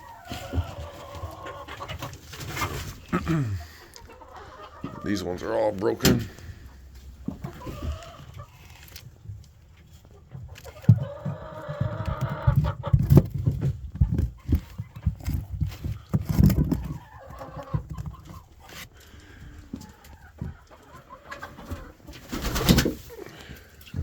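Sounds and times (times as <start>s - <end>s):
chickens clucking: 0.0s - 24.0s
knocks and thumps in wood shavings: 10.6s - 18.7s.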